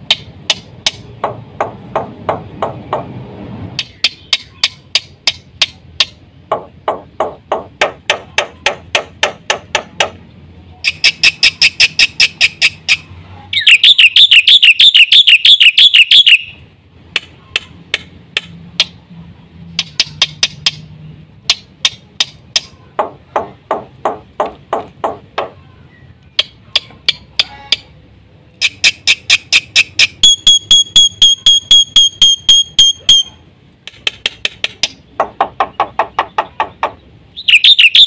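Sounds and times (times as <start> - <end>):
fast warbling bird trill: 10.8 - 16.6, 37.3 - 38.0
starling singing: 10.8 - 16.6, 34.9 - 38.0.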